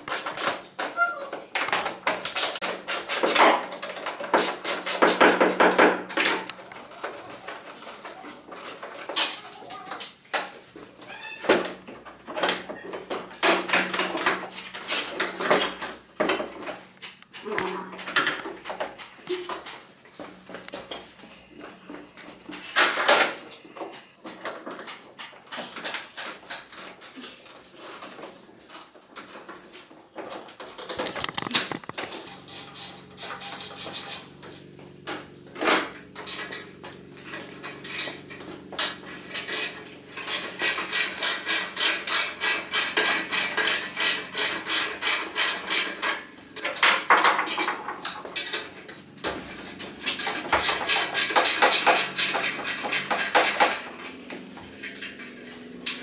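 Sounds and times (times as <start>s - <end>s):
metal tools and parts clinking: 30.6s - 48.8s.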